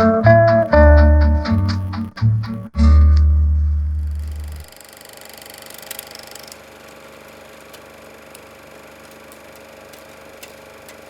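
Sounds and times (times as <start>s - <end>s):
film projector hum: 3.9s - 11.0s
crackle: 7.7s - 11.0s.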